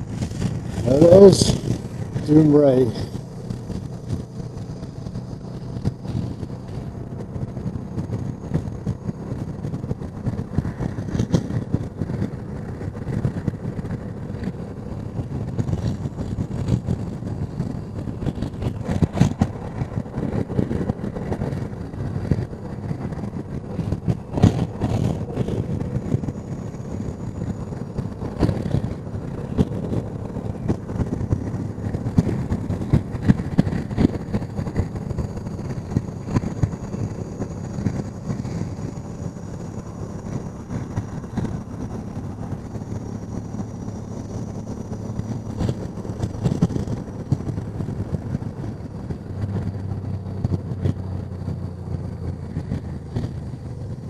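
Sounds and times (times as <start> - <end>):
motorcycle engine running: 0.0 - 54.0
wind noise on microphone: 0.0 - 54.0.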